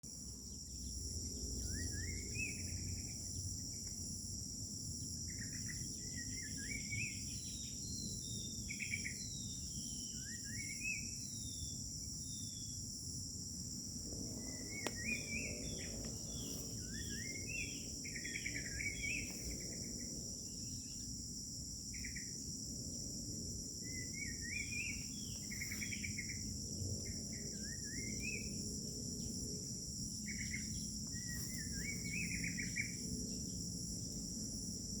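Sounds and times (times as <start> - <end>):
crickets droning: 0.0 - 35.0
low background rumble: 11.4 - 35.0.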